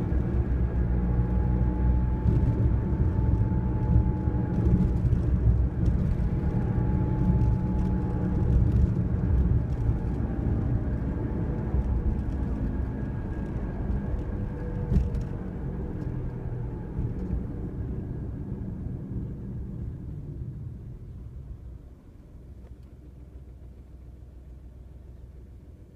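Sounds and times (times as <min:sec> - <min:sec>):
road rumble: 0:00.0 - 0:25.9.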